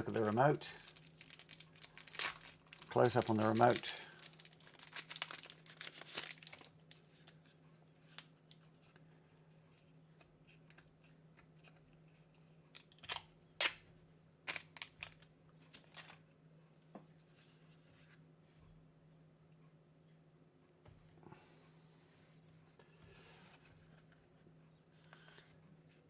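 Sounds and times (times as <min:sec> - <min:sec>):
plastic packaging crinkling and tearing: 0:00.0 - 0:07.4, 0:14.5 - 0:16.2.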